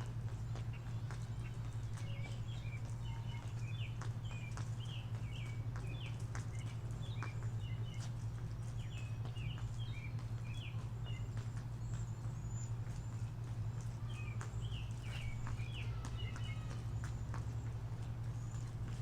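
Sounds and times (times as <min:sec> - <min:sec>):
small birds chirping: 0:00.0 - 0:19.0
steady low hum: 0:00.0 - 0:19.0.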